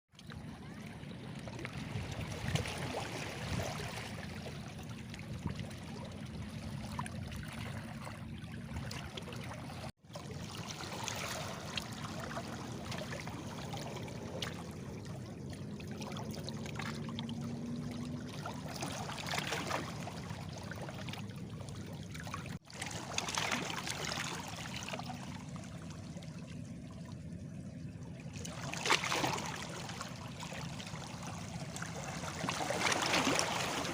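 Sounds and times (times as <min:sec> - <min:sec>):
small waves splashing on stones: 0:22.8 - 0:24.9, 0:31.9 - 0:33.9.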